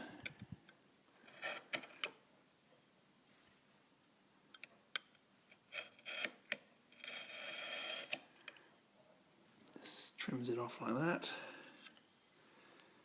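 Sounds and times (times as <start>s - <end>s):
razor blade scraping: 5.7s - 6.4s, 7.0s - 8.2s.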